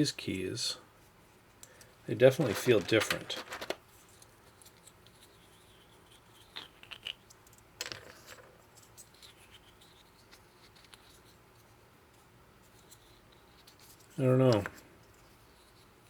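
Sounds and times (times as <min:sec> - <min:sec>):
plastic keycaps clicking and scraping: 0:02.3 - 0:03.8.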